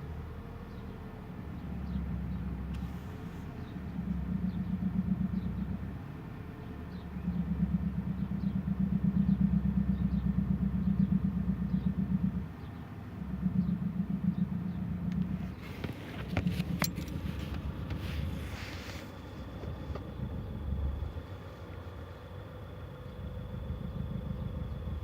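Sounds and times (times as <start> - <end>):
car engine low throbbing knock: 6.9 - 25.0.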